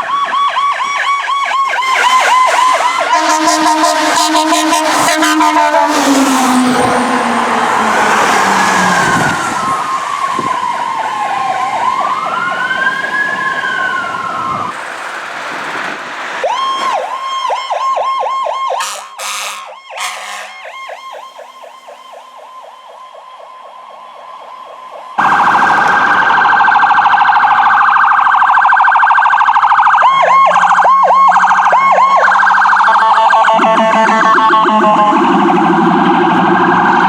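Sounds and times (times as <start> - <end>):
loud siren fast warble: 0.0 - 14.7, 16.4 - 37.0
electronic siren dipping tone: 0.1 - 10.7, 30.2 - 37.0.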